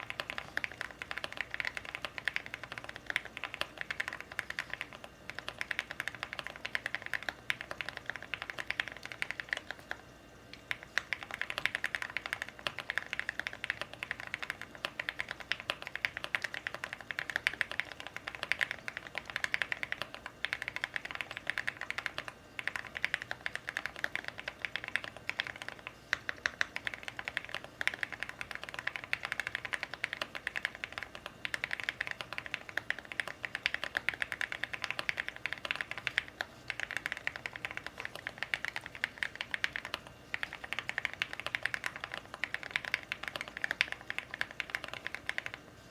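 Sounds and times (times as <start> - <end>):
mechanical keyboard typing clacks: 0.0 - 45.6.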